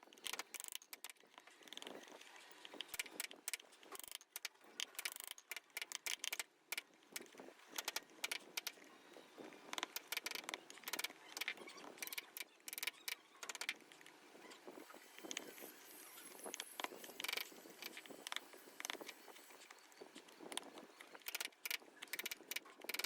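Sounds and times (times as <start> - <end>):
carving tools cutting wood: 9.6 - 23.0.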